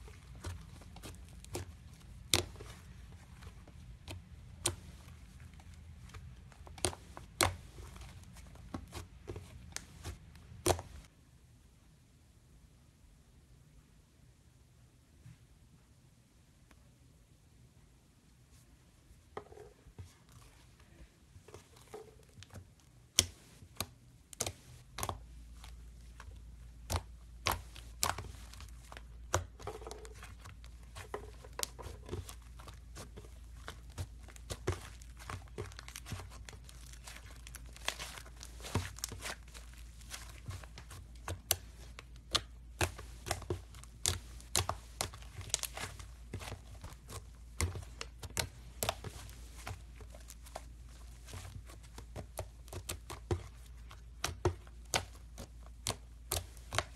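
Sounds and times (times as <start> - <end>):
foam slime crackling and popping: 23.1 - 56.9.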